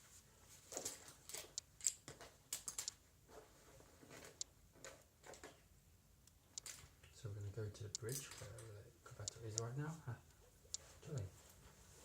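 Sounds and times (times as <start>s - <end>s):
soft handling noise: 0.0s - 5.7s, 6.5s - 12.0s.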